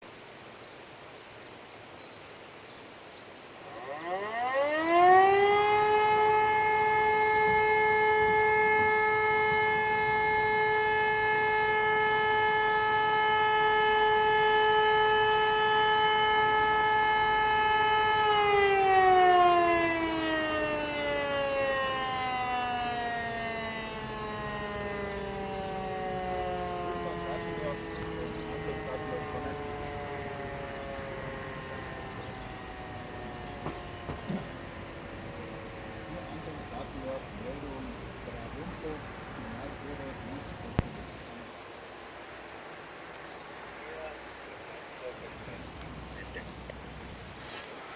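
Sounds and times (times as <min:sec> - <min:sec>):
siren winding up and down: 0:03.6 - 0:41.0.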